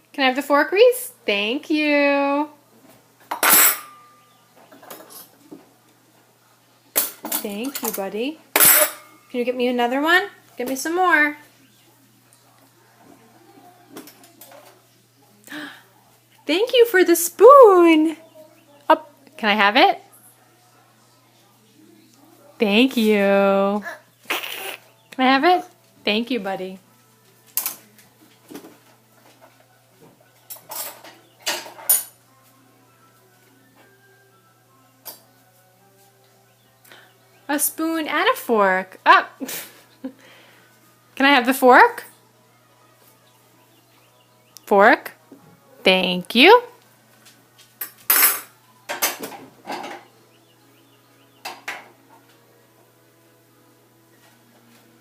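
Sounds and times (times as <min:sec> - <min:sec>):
cutlery clinking against dishes: 0:03.2 - 0:05.4, 0:06.9 - 0:09.3, 0:27.5 - 0:29.6, 0:30.4 - 0:32.2, 0:35.0 - 0:35.3, 0:47.8 - 0:50.1.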